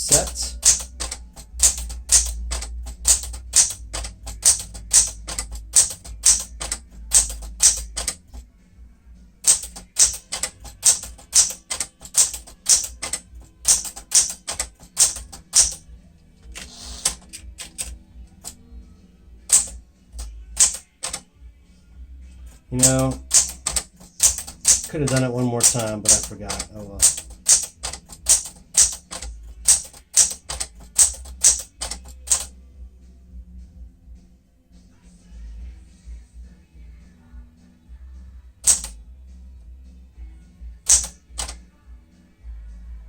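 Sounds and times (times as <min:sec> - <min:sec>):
manual typewriter keys striking: 0:00.0 - 0:08.4, 0:09.4 - 0:15.8, 0:16.4 - 0:18.6, 0:19.5 - 0:21.2, 0:22.5 - 0:32.5, 0:38.6 - 0:39.0, 0:40.9 - 0:41.6.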